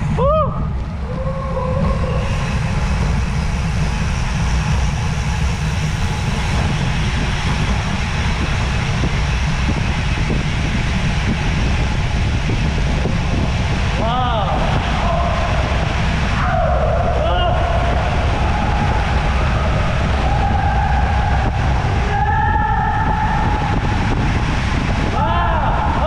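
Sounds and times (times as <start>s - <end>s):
wind rush on microphone: 0.0s - 26.0s.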